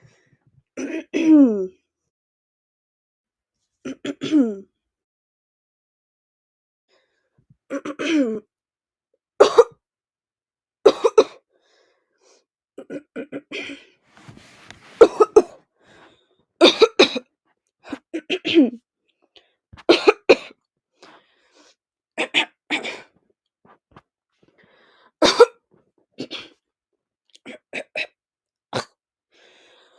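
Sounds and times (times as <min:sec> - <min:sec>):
girl clearing throat with coughs: 0:03.9 - 0:04.6, 0:07.7 - 0:08.4, 0:09.4 - 0:09.8, 0:10.9 - 0:11.4, 0:15.0 - 0:15.6, 0:16.6 - 0:17.3, 0:25.2 - 0:25.6, 0:28.8 - 0:29.0.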